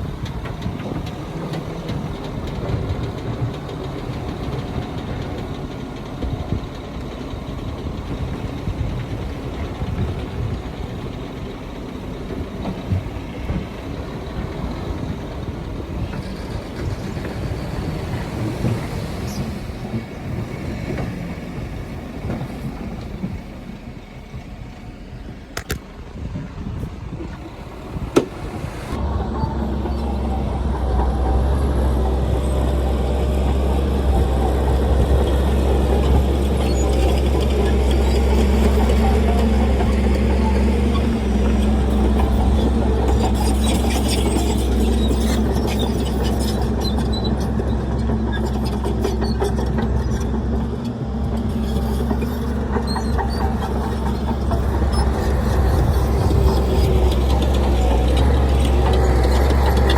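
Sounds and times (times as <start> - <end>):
diesel machinery engine rumble: 0.0 - 59.9.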